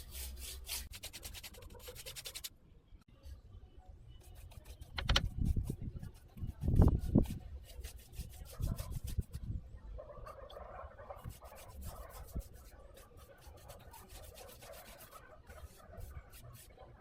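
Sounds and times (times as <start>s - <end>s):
paintbrush scrubbing metal: 0.0s - 2.5s, 11.2s - 16.8s.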